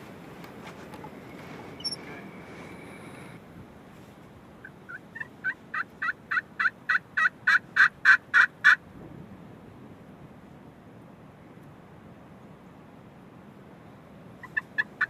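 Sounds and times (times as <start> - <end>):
turkey yelps: 4.6 - 8.8, 14.4 - 15.0.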